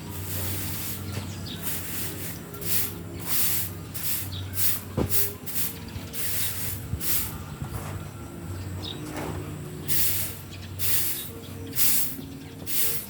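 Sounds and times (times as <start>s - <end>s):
low mechanical hum: 0.0s - 13.0s
short hissing swishes: 1.6s - 7.4s, 9.9s - 13.0s.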